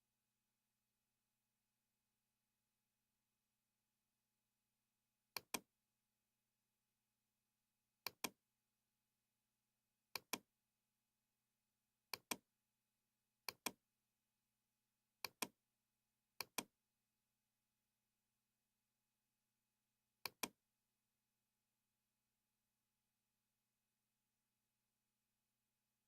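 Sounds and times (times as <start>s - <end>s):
computer mouse button clicking: 5.4s - 5.7s, 8.0s - 8.4s, 10.1s - 10.4s, 12.1s - 12.4s, 13.5s - 13.8s, 15.2s - 15.5s, 16.4s - 16.7s, 20.2s - 20.6s.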